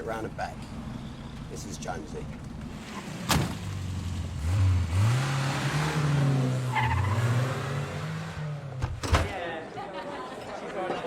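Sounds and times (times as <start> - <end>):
car engine pulling away: 2.6 - 8.8.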